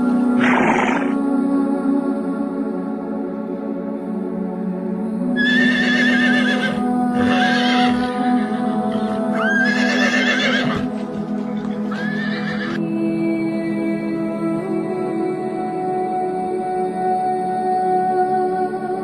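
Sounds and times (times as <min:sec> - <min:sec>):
ambient background music: 0:00.0 - 0:19.0
horse whinnying: 0:00.4 - 0:01.2, 0:05.4 - 0:11.0, 0:11.6 - 0:12.8.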